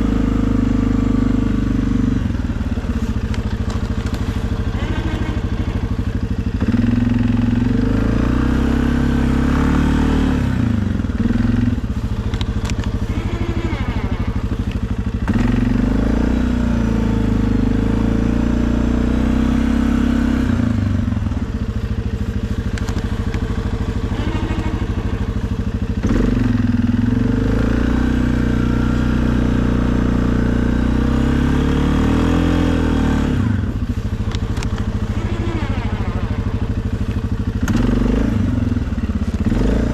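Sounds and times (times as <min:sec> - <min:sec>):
atv engine under load: 0:00.0 - 0:39.9
clatter: 0:02.2 - 0:08.5, 0:09.4 - 0:17.2, 0:20.4 - 0:30.1, 0:32.6 - 0:39.9.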